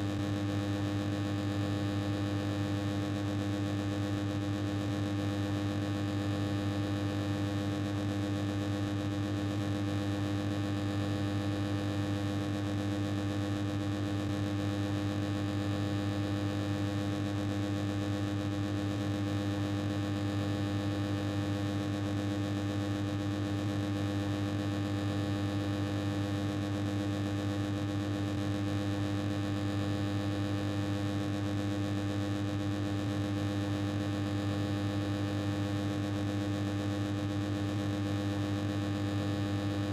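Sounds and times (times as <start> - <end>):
low electrical hum: 37.6 - 39.9.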